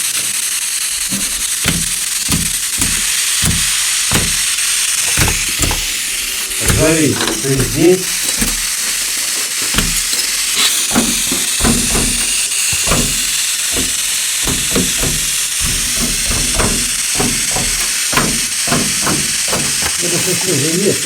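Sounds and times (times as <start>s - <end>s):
radio static hiss: 20.0s - 21.0s.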